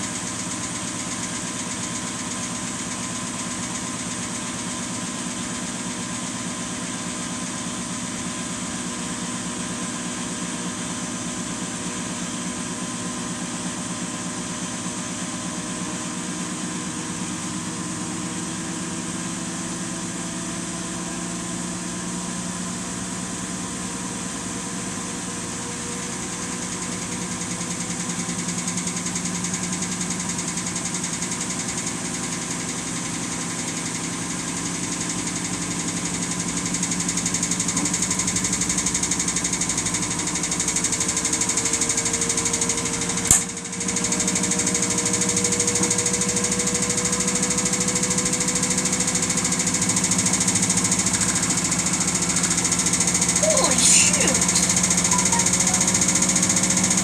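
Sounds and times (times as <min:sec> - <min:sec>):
washing machine spinning: 0:26.4 - 0:57.0.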